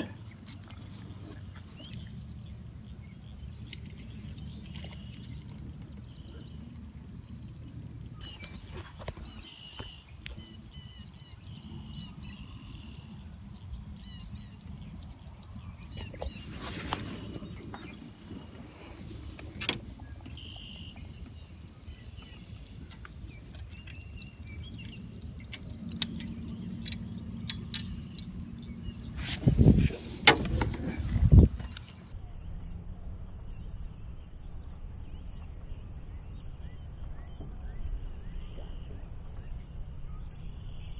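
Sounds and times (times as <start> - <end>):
birds chirping: 0.0 - 32.1
small clicks and rattles: 21.9 - 29.2.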